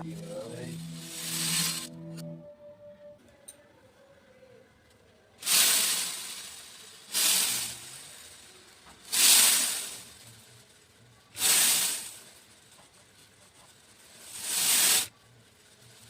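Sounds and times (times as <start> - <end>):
beads being poured: 0.3 - 1.9.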